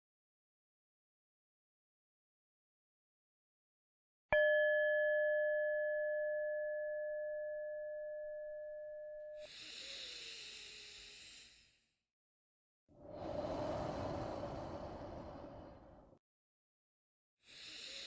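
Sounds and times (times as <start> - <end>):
meditation bell ringing: 4.4 - 9.4
soft breath sound: 13.0 - 16.2, 17.5 - 18.0.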